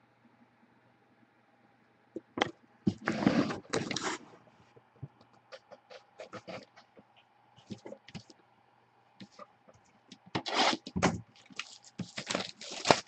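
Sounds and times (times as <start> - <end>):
packaging scraping and rustling: 2.9 - 4.3, 10.4 - 13.0.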